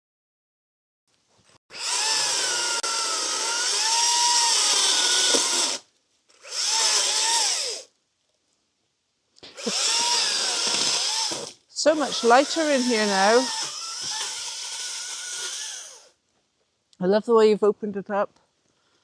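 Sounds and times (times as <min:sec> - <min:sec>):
electric chainsaw cutting wood: 0:01.7 - 0:07.9, 0:09.4 - 0:16.2.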